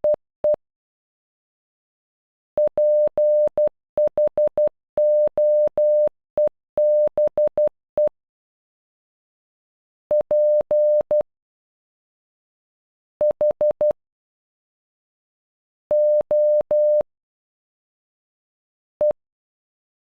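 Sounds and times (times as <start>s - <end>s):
morse code beeps: 2.6s - 8.1s.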